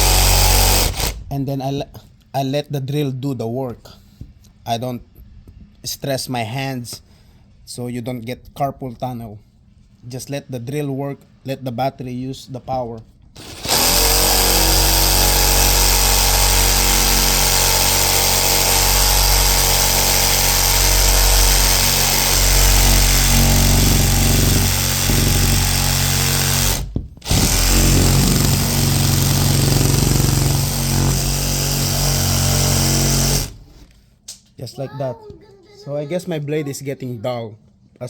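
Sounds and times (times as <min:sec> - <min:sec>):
reciprocating saw cutting metal: 0:00.0 - 0:01.3, 0:13.4 - 0:33.9.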